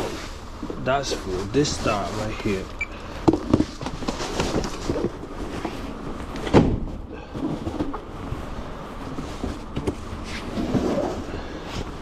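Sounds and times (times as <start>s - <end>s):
cardboard boxes knocking and thumping: 3.2s - 5.8s.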